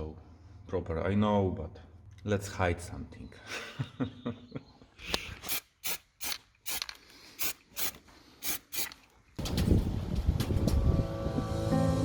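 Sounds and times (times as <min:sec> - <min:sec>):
music: 0:10.5 - 0:12.0.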